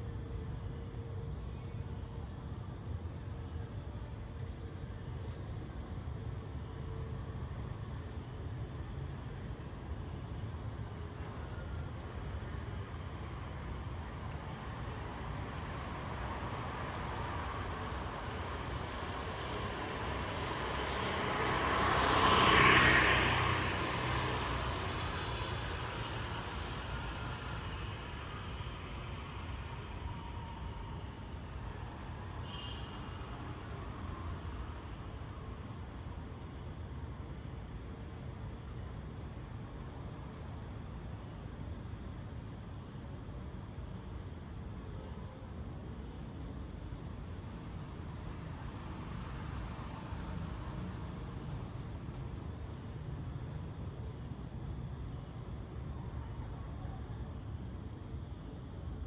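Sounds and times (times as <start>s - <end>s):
crickets chirring: 0.3s - 44.7s
vehicle passing: 17.8s - 28.0s.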